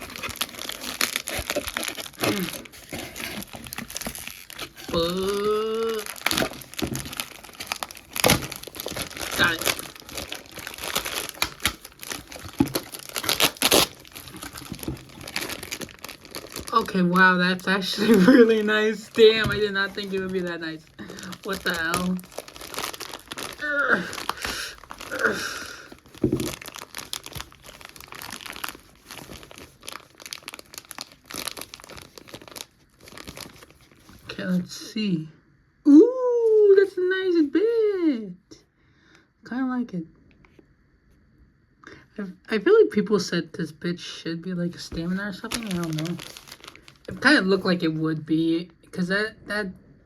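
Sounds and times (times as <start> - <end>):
packaging crinkling and tearing: 0.0 - 34.4, 44.8 - 47.8.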